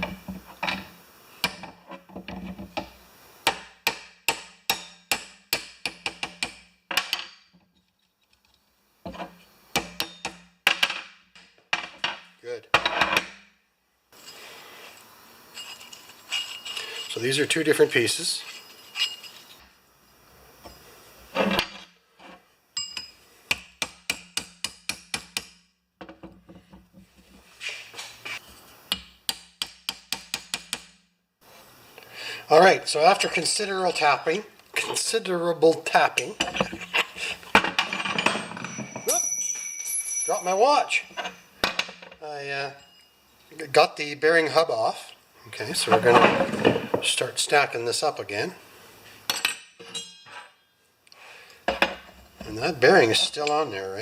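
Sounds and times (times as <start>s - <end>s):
hammer tapping on metal: 22.8s - 25.6s, 28.9s - 31.0s.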